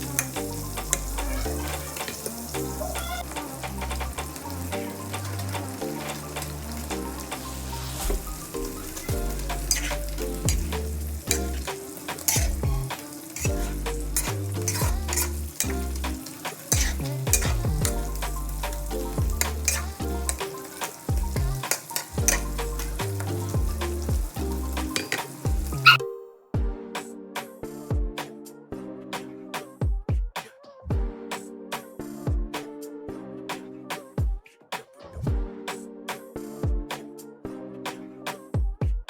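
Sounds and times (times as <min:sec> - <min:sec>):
background music with bass: 0:00.0 - 0:26.0, 0:35.1 - 0:38.9
food sizzling in a pan: 0:00.0 - 0:26.0
spatula scraping a pan: 0:09.0 - 0:17.8, 0:19.4 - 0:23.0, 0:24.9 - 0:26.0.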